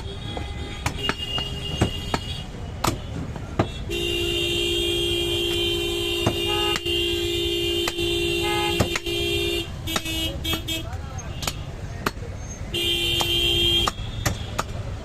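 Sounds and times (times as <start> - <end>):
cleaver chopping meat and bone: 0.8 - 3.9, 7.8 - 12.4, 13.1 - 15.0.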